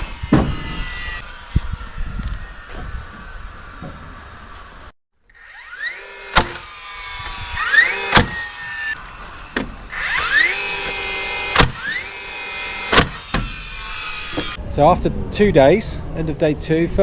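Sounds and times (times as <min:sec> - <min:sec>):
power tool motor whining: 0:00.0 - 0:14.6
sharp knocks: 0:10.8 - 0:11.9.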